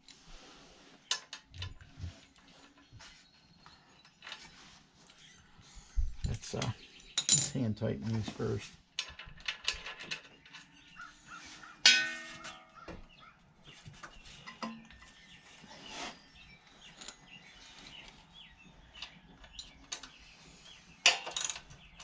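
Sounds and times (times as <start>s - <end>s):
metal tools clinking and tapping: 6.2s - 11.1s, 11.7s - 13.0s, 13.9s - 15.3s, 16.8s - 17.4s, 19.0s - 20.2s, 21.0s - 22.0s
loud ringing metal clang: 11.8s - 12.6s.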